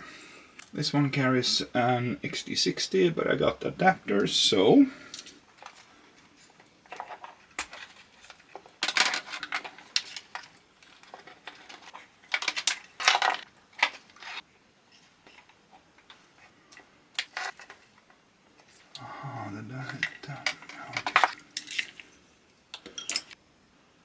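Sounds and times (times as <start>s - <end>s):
small hard parts clinking and rattling: 5.1s - 19.0s, 19.8s - 23.4s.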